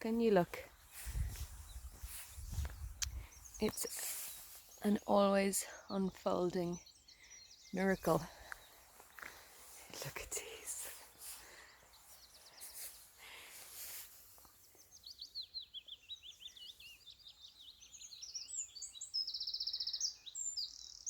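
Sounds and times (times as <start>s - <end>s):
faint rustle: 0.0s - 5.6s, 8.0s - 15.0s
songbird singing with trills: 0.0s - 12.9s, 14.4s - 21.0s.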